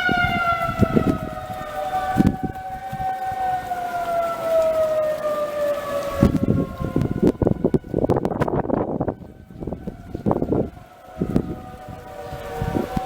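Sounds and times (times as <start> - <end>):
tornado warning siren: 0.0 - 13.0
wind buffeting microphone: 0.0 - 13.0.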